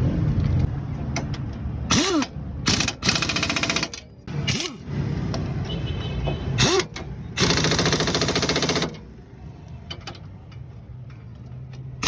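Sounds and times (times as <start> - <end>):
impact wrench rattling: 1.2 - 4.8, 6.6 - 9.1.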